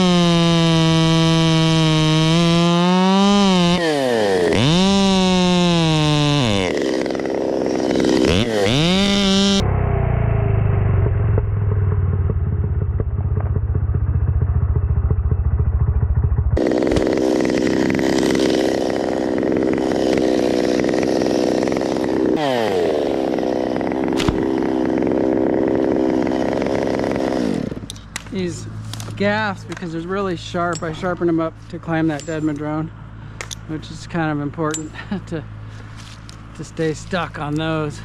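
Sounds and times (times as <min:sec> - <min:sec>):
chainsaw engine running: 0:00.0 - 0:09.6, 0:16.6 - 0:32.9.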